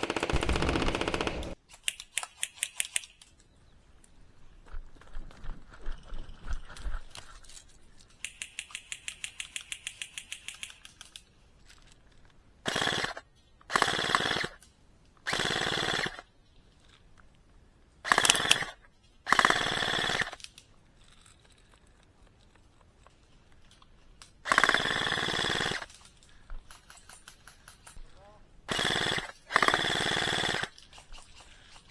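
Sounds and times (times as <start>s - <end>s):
airsoft rifle firing bursts: 0.0s - 2.9s, 12.7s - 14.6s, 15.3s - 16.2s, 18.1s - 20.4s, 24.5s - 25.9s, 28.7s - 31.0s
quick run of clicks: 8.2s - 11.1s, 18.1s - 18.7s.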